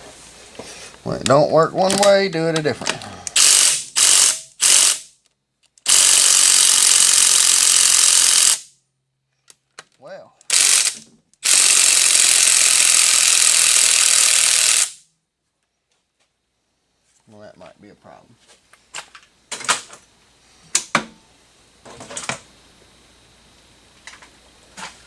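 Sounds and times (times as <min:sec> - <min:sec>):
ratchet wrench running: 0:01.8 - 0:05.2, 0:05.8 - 0:08.7, 0:10.4 - 0:15.0.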